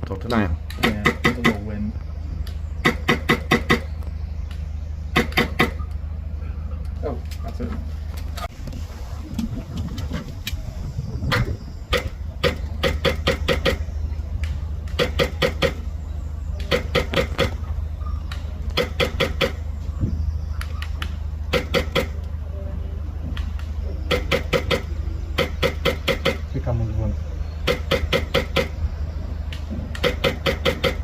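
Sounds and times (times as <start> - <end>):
airsoft rifle firing: 5.1 - 5.8, 11.9 - 13.8, 14.9 - 15.8, 18.7 - 19.6, 21.5 - 22.2, 24.1 - 26.4, 30.0 - 31.0
wind rumble on microphone: 7.9 - 14.9, 19.6 - 21.2.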